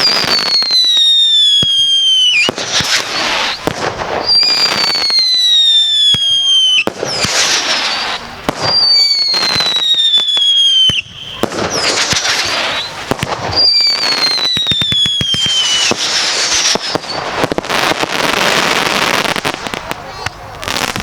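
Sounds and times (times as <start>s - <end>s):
firework whistles falling in pitch: 0.0s - 21.0s
rapid fireworks crackling: 0.0s - 21.0s.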